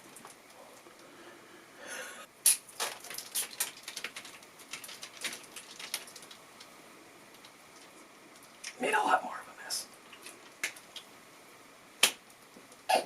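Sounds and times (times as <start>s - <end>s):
wet crackles and squelches: 2.5s - 8.8s, 9.9s - 11.2s.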